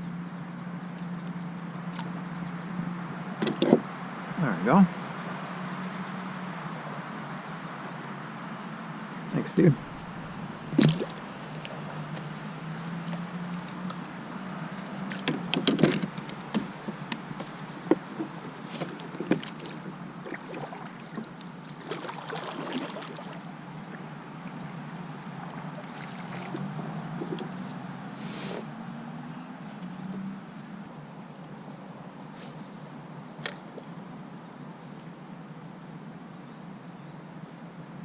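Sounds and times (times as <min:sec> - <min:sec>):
steady low hum: 0:00.0 - 0:38.0
paddle strokes swishing water: 0:09.8 - 0:28.0
paddle knocking on kayak hull: 0:10.6 - 0:11.2.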